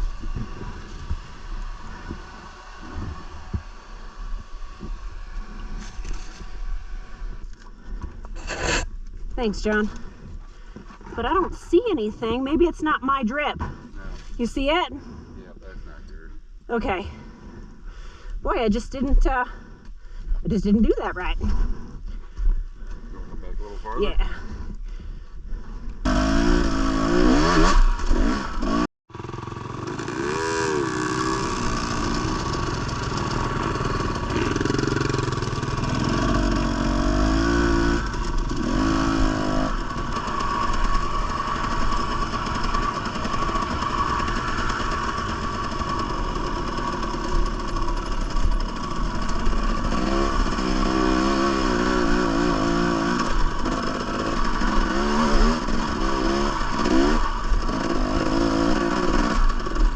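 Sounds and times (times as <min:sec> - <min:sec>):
dirt bike engine revving: 0:00.0 - 0:10.2, 0:25.6 - 0:59.9.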